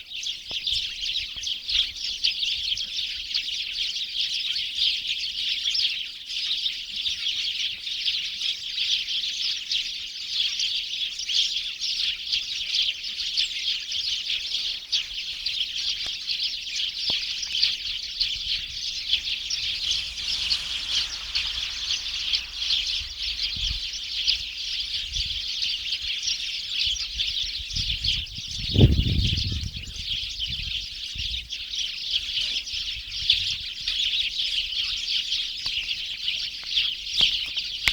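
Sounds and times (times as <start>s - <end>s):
small birds chirping: 13.4s - 37.9s.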